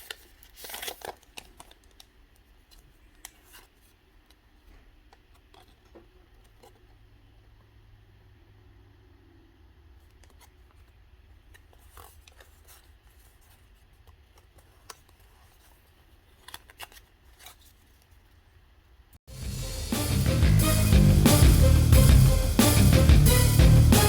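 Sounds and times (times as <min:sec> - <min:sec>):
card pack clicks and crinkles: 0:00.0 - 0:04.3, 0:10.1 - 0:18.1.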